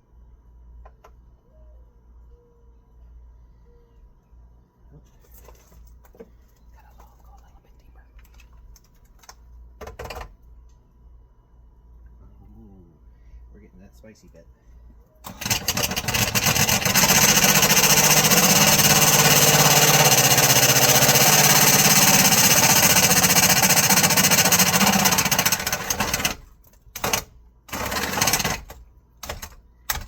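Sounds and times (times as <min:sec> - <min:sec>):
power drill rattling: 0:15.2 - 0:30.0.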